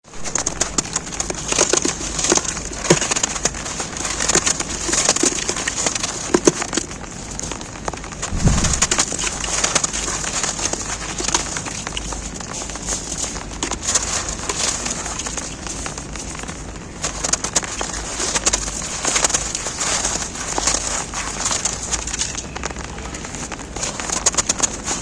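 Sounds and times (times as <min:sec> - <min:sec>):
rain on an umbrella: 0:00.0 - 0:25.0
snow crunching: 0:08.2 - 0:09.3.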